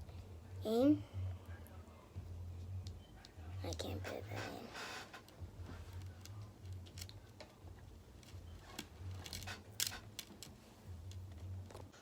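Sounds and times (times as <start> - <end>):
plastic toy pieces clicking: 9.2 - 10.5.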